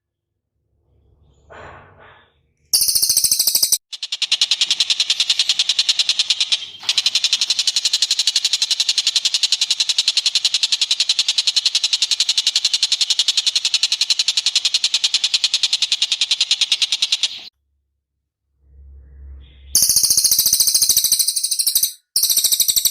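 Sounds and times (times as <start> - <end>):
bird's rattling trill: 2.8 - 17.5, 19.8 - 22.9.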